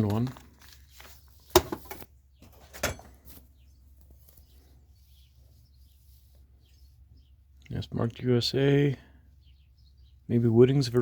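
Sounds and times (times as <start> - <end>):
hand tools clattering: 1.6 - 3.3.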